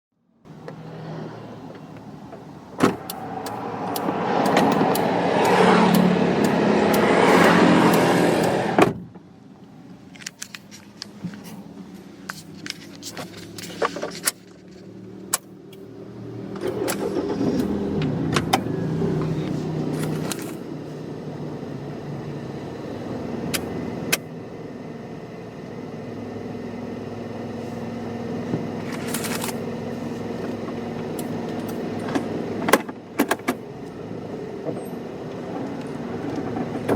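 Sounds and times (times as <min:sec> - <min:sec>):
outside noise: 0:00.1 - 0:36.9
car engine idling: 0:00.5 - 0:36.9
car door slamming: 0:02.7 - 0:05.0, 0:08.5 - 0:09.2.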